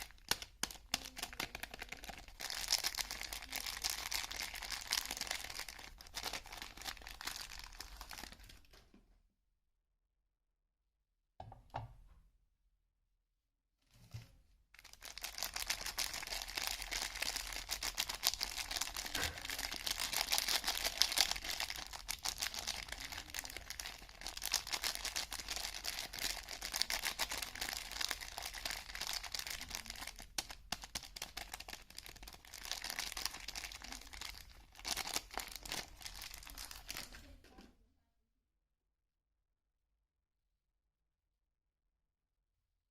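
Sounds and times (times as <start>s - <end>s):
soap wrapping crinkling and tearing: 0.0s - 8.8s, 14.8s - 37.3s.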